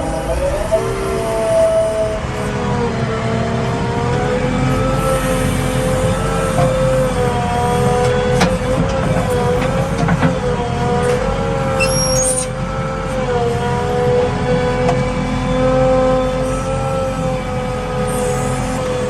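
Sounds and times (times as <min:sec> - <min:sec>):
backhoe loader engine whine: 0:00.0 - 0:19.0.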